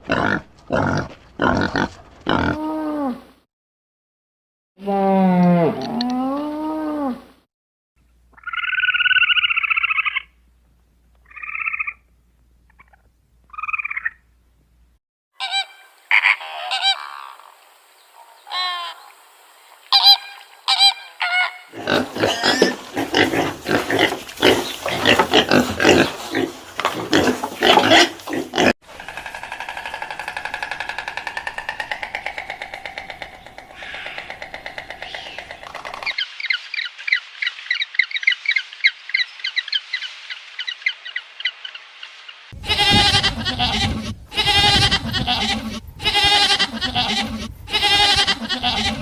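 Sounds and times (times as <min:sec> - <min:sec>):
rapid animal calling: 0:08.3 - 0:10.4, 0:27.1 - 0:36.6, 0:42.7 - 0:49.0.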